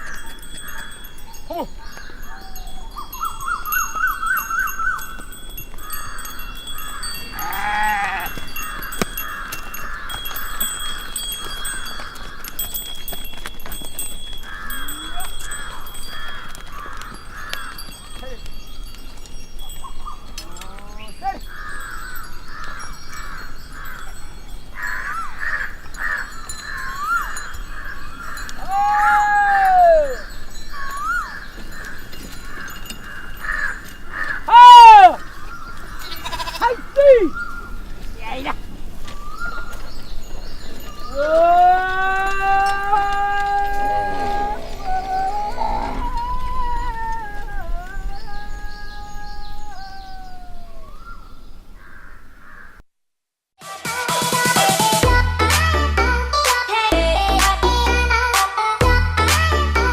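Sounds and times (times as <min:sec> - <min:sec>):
small birds chirping: 0:00.0 - 0:28.8, 0:30.0 - 0:41.6, 0:43.7 - 0:52.8
long falling animal call: 0:05.8 - 0:12.5, 0:21.5 - 0:38.0, 0:40.9 - 0:52.8
farm animal bleating: 0:06.9 - 0:09.6, 0:36.0 - 0:38.7.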